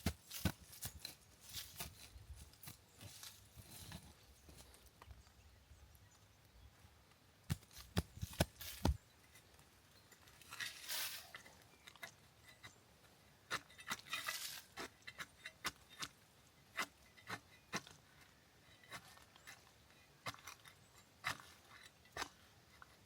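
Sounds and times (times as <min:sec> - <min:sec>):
rustling scrapes: 0:00.2 - 0:04.8, 0:07.6 - 0:09.0, 0:10.3 - 0:11.6, 0:13.8 - 0:15.3.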